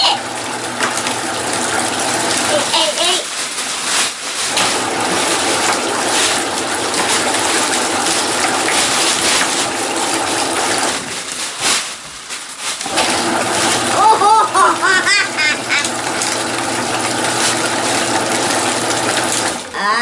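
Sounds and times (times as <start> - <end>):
child's voice: 0.0 - 0.3, 2.4 - 3.3, 13.9 - 14.6, 19.7 - 20.0
washing machine churning water: 0.0 - 20.0.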